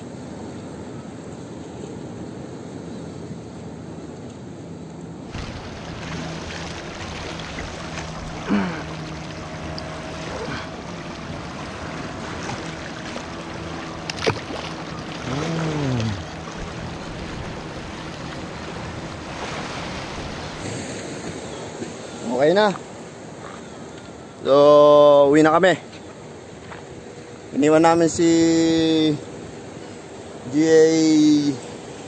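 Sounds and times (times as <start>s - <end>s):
faint steady hum: 0.0s - 32.0s
sea waves washing on rocks: 5.2s - 24.6s.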